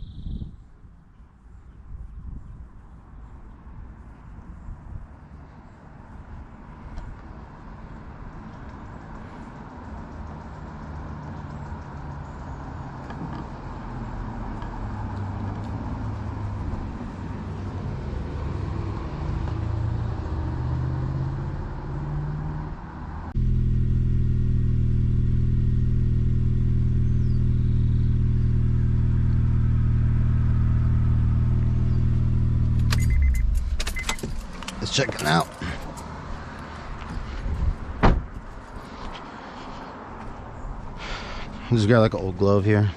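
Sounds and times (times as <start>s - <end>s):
car engine running: 23.4s - 36.0s.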